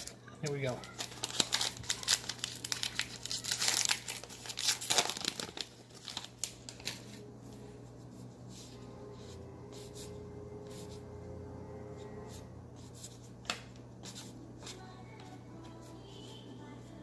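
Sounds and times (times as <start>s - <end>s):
card pack wrapper tearing and crinkling: 0.0s - 7.2s.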